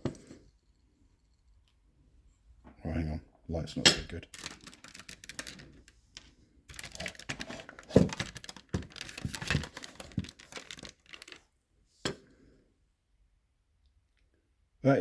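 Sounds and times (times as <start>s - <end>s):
camera handling clicks and rustles: 4.3s - 11.4s.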